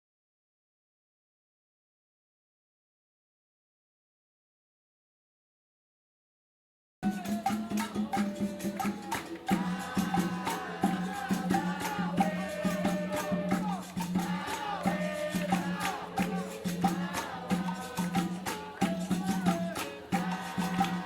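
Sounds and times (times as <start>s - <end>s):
berimbau: 7.0s - 21.0s
hand percussion: 7.0s - 21.0s
voices singing: 7.0s - 21.0s.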